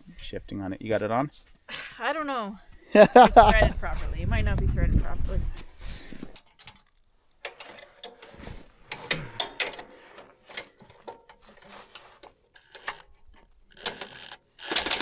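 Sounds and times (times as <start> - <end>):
ratchet wrench clicking: 13.7 - 15.0.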